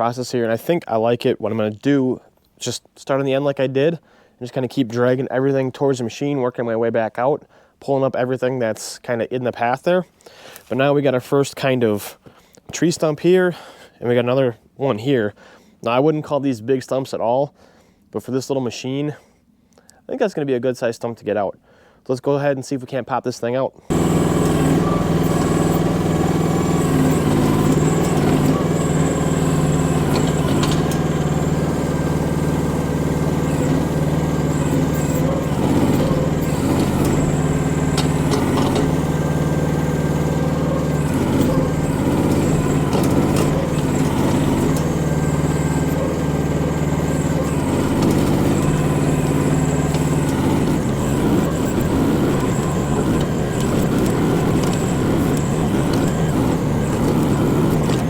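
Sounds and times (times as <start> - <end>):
excavator engine under hydraulic load: 23.9 - 58.0.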